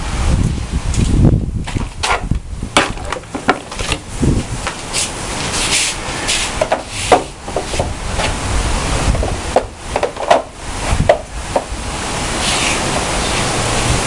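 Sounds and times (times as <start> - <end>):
storm wind gusting: 0.0 - 14.0
knocks and rattles: 1.6 - 4.8, 6.6 - 8.4, 9.1 - 11.8.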